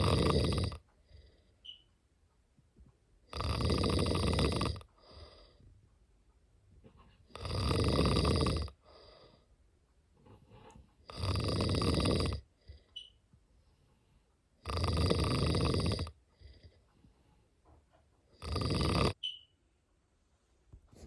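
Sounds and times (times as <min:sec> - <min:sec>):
cat snoring: 0:00.0 - 0:01.5, 0:03.3 - 0:05.6, 0:07.3 - 0:09.4, 0:11.0 - 0:12.9, 0:14.6 - 0:16.8, 0:18.4 - 0:19.2.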